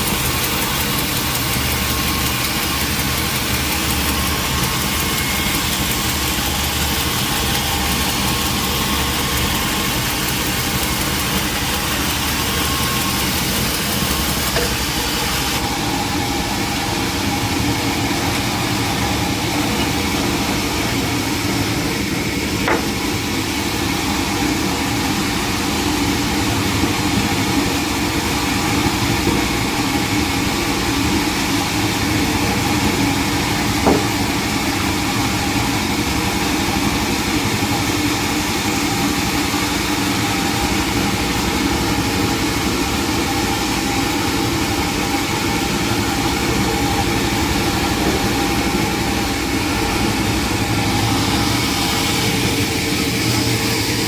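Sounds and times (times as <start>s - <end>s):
sawmill machinery humming: 0.0s - 54.0s
knock: 22.6s - 23.0s, 33.8s - 34.1s.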